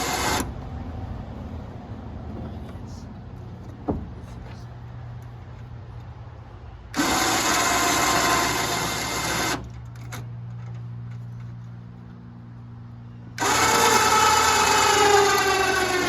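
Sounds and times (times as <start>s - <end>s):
loud motor-driven machine: 0.0s - 0.6s, 6.9s - 10.2s, 13.3s - 16.0s
steady low hum: 0.0s - 7.0s.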